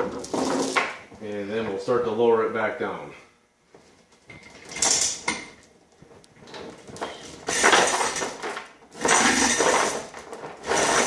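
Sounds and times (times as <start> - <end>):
metal chain rattling: 4.4 - 5.5, 7.4 - 11.0.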